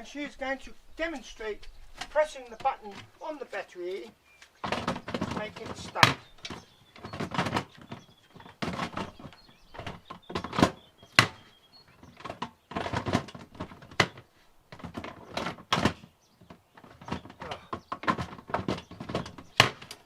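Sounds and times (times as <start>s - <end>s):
plastic casing knocks and rattles: 4.6s - 20.0s.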